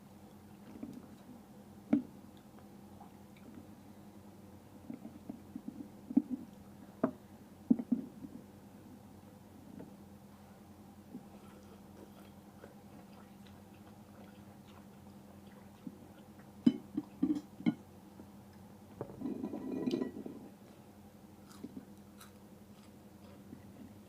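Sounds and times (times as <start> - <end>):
person chewing noodles: 11.2 - 17.2, 21.4 - 24.0.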